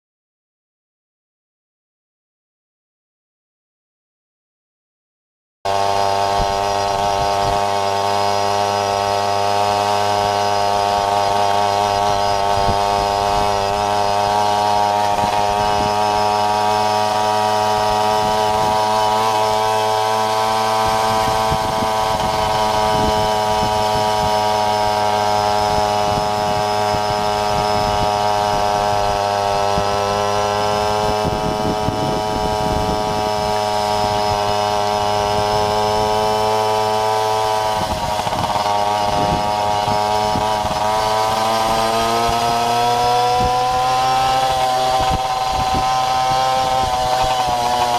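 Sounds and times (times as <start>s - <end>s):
moped engine running: 5.7s - 47.9s.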